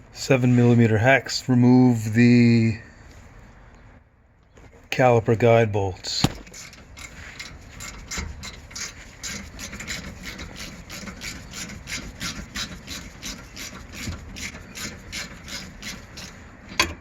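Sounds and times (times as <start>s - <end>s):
hex tool rasping strokes: 6.4s - 16.6s.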